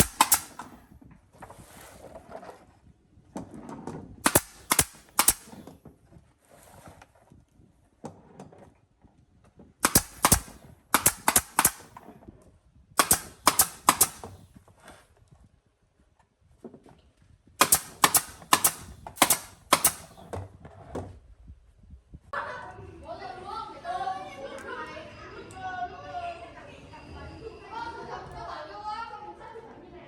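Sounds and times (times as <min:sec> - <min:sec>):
sharp loud knocks or shots: 0:00.0 - 0:00.7, 0:04.3 - 0:05.6, 0:09.8 - 0:11.9, 0:13.0 - 0:14.3, 0:17.6 - 0:20.2.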